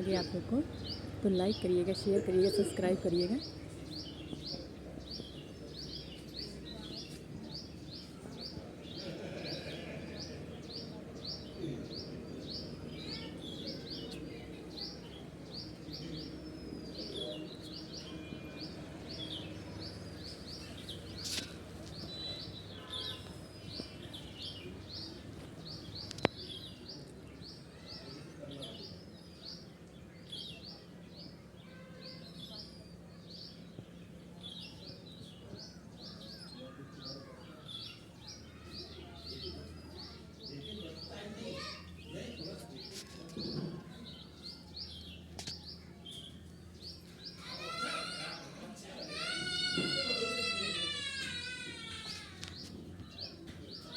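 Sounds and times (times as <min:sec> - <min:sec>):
small birds chirping: 0:00.0 - 0:53.9.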